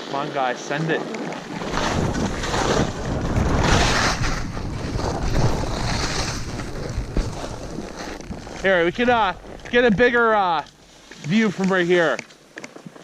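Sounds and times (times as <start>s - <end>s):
wind buffeting microphone: 1.4s - 11.4s.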